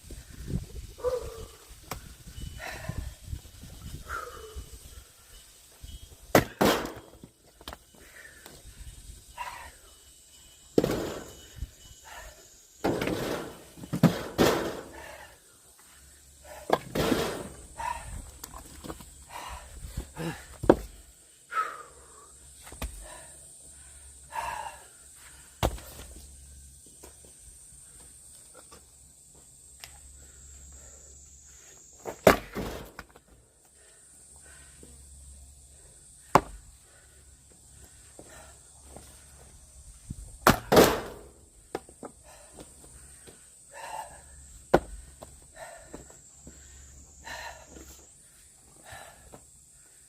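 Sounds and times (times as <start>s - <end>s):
axe splitting firewood: 6.3s - 7.8s, 12.8s - 15.0s, 16.6s - 17.6s, 32.1s - 33.2s, 36.3s - 36.6s, 40.4s - 41.9s, 44.7s - 45.0s.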